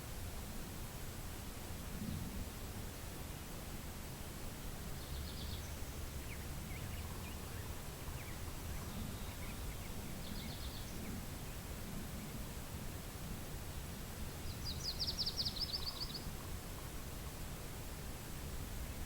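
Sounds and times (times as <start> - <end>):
steady hiss: 0.0 - 19.0
wind rumbling on microphone: 0.0 - 19.0
small birds trilling: 5.0 - 11.2
faint bird chirps: 5.0 - 12.4, 14.4 - 17.0.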